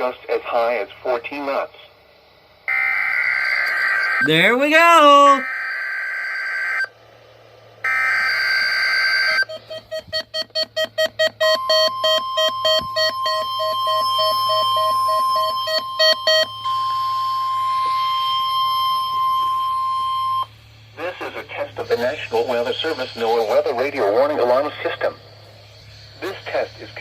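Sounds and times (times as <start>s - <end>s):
steady warning alarm tone: 2.7s - 6.9s, 7.8s - 27.0s
weather radio alert beeping: 3.5s - 5.6s, 7.9s - 25.3s.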